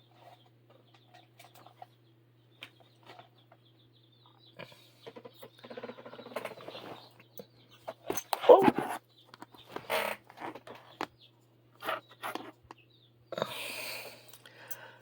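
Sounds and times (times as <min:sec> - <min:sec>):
small ticks and scraping: 0:02.6 - 0:12.8.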